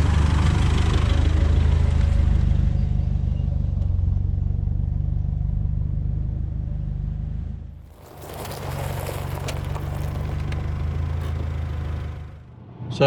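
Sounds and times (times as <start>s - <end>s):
vehicle engine droning: 0.0s - 12.6s
road noise: 7.8s - 12.6s.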